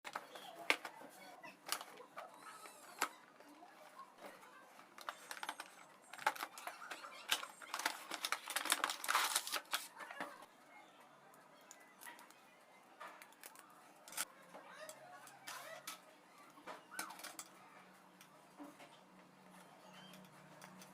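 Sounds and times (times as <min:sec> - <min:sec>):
plastic toy clicks and rustling: 0:00.1 - 0:10.5, 0:13.2 - 0:17.6, 0:19.5 - 0:20.9.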